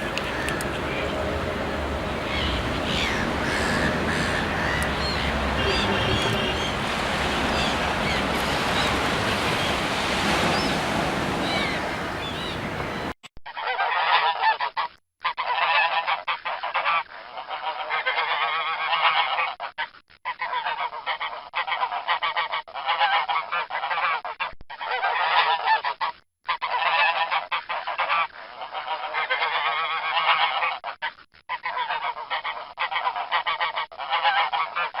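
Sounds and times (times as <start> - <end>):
geese honking: 0.0 - 13.1.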